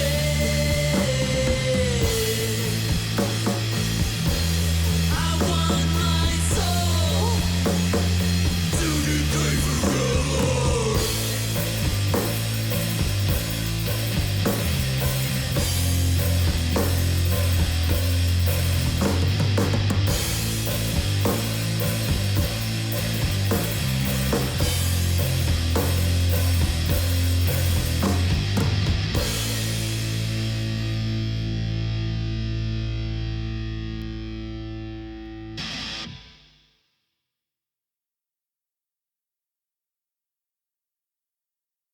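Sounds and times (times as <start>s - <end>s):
drum kit beat: 0.0s - 30.8s
heavy rock riff: 0.0s - 36.6s.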